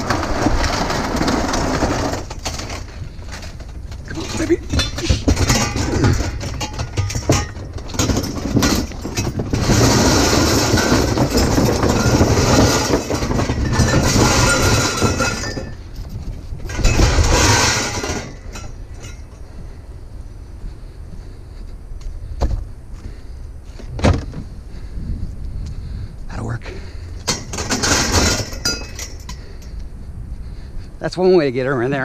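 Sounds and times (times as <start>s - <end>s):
metal tubes and springs clanking: 0.0s - 19.4s, 27.2s - 29.8s.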